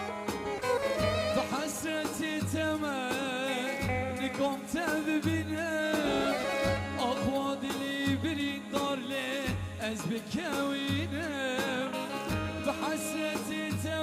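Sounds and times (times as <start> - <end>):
electronic keyboard melody: 0.0 - 3.8, 5.9 - 8.1.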